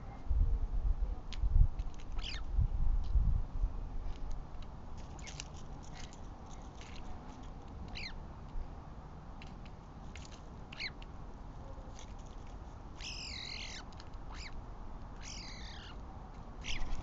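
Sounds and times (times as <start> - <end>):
bird chirps: 2.2 - 2.4, 7.9 - 8.2, 10.7 - 11.0, 13.0 - 14.6, 15.2 - 16.0, 16.6 - 17.0
sharp descending bird calls: 15.2 - 16.0.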